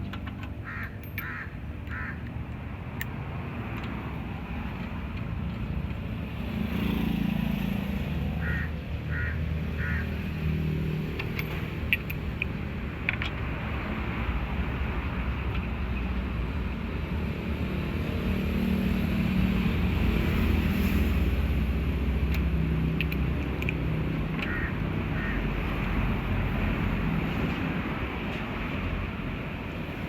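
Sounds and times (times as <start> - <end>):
sharp metallic clicks: 0.0 - 6.1, 11.0 - 13.7, 22.2 - 24.7.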